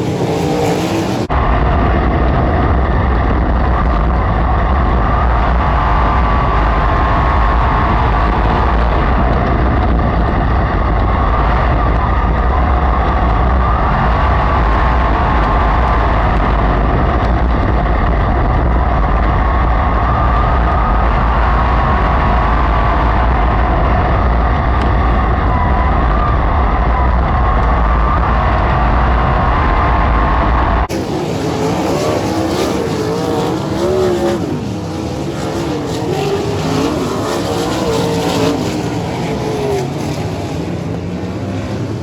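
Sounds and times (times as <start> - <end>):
racing engine drone: 0.0 - 42.0.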